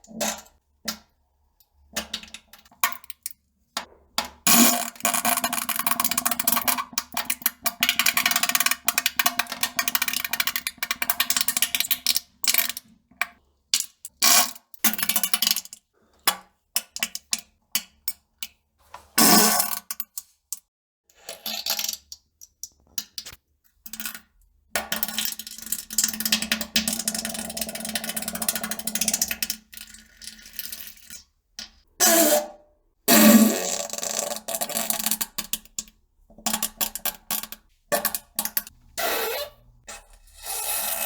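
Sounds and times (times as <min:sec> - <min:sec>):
farts: 0:39.0 - 0:39.7.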